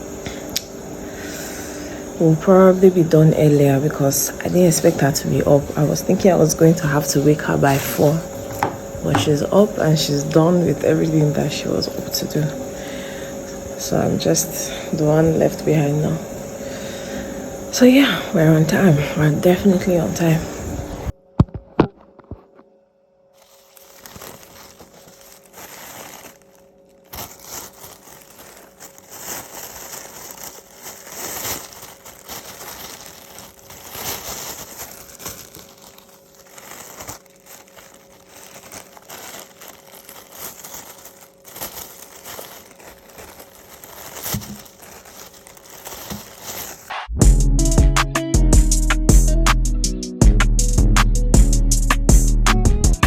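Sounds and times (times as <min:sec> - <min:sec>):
plastic wrapping crinkling: 0:02.2 - 0:13.0, 0:23.3 - 0:46.9.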